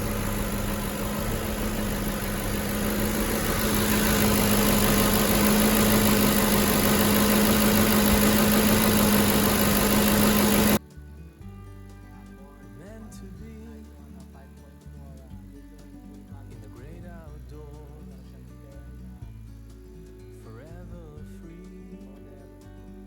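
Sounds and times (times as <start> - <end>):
truck engine idling: 0.0 - 10.8
faint music: 10.8 - 23.0.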